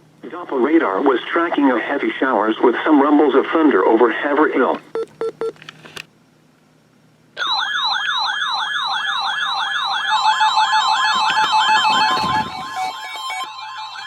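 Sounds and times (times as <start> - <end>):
warbling electronic siren tone: 7.4 - 14.0
stepped beeping tone: 10.1 - 14.0.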